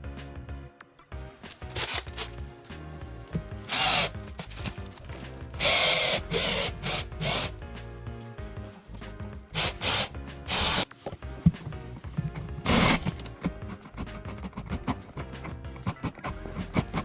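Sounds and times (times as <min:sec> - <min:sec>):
background music: 0:00.0 - 0:17.0
power tool short bursts: 0:01.7 - 0:02.4, 0:03.6 - 0:04.3, 0:05.6 - 0:07.5, 0:09.6 - 0:10.9.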